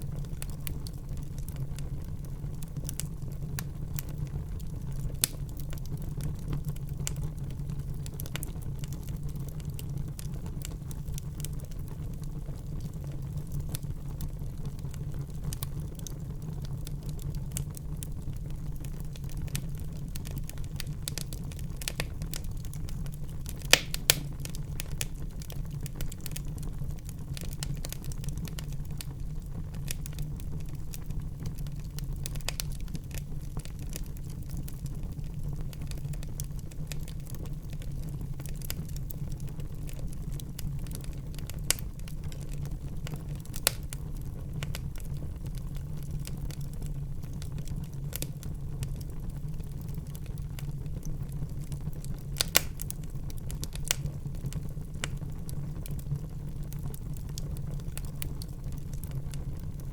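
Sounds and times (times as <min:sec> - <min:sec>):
wood fire crackling: 0:00.0 - 0:59.9
sharp pops from fire: 0:02.6 - 0:07.3, 0:16.8 - 0:34.8, 0:35.8 - 0:46.6, 0:47.3 - 0:48.5, 0:49.8 - 0:59.8.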